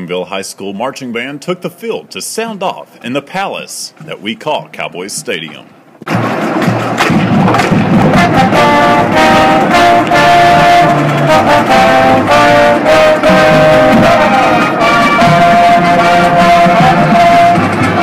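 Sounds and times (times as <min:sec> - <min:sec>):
drumline hits: 0:04.8 - 0:18.0
brass holding chords: 0:06.6 - 0:18.0.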